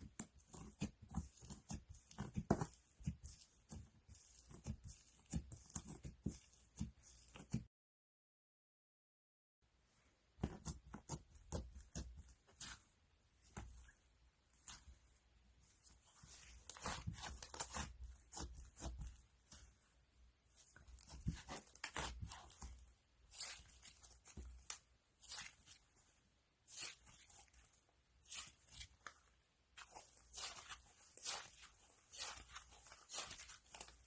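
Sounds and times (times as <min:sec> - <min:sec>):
crunchy slime crackling: 0:29.8 - 0:34.0.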